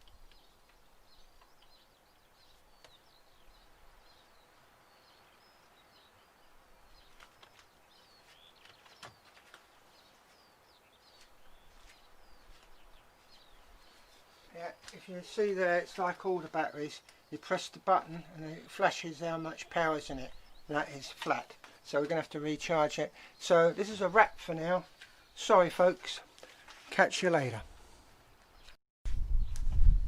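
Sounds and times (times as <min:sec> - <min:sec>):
distant birds chirping: 0:00.0 - 0:28.8.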